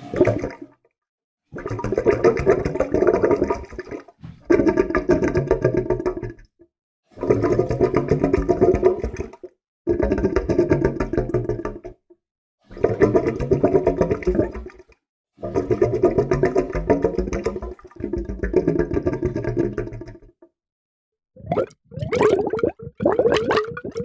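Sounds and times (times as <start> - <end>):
water gurgling: 0.0 - 0.7, 1.6 - 6.3, 12.7 - 14.8, 15.4 - 20.3, 21.4 - 24.0.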